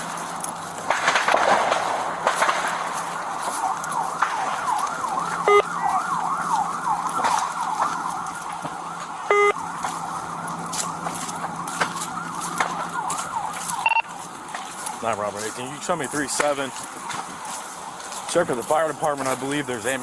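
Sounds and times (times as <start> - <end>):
police siren yelping: 0.0 - 20.0
sharp pops: 0.8 - 3.1, 3.7 - 4.8, 11.0 - 12.9
short electronic beeps: 9.3 - 9.6, 13.8 - 14.1.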